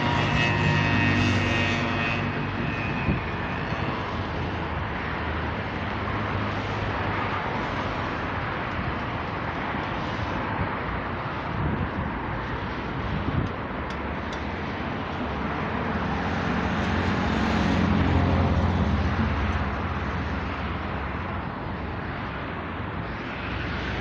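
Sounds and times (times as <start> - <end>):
droning engine: 0.0 - 24.0
steady rushing noise: 0.0 - 24.0.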